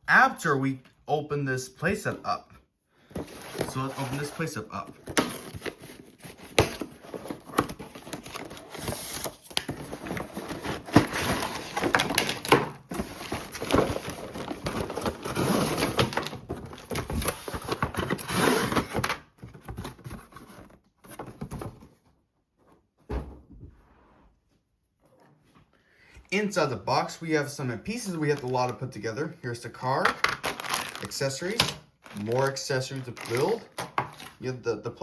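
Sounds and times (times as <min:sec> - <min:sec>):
cardboard packaging rustling: 0:03.0 - 0:21.9, 0:30.2 - 0:34.4.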